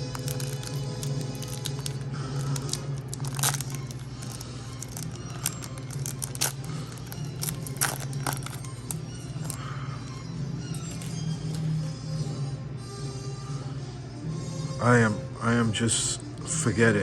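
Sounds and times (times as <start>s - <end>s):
cards scraping: 0.0s - 9.6s
foil wrapper crinkling and tearing: 0.0s - 9.6s
low steady hum: 0.0s - 16.5s.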